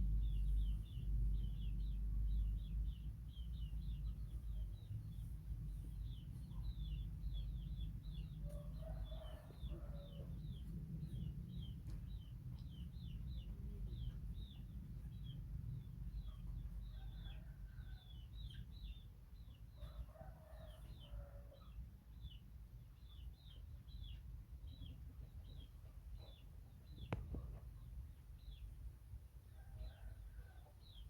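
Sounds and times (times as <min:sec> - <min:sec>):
low rumble: 0:00.0 - 0:08.8.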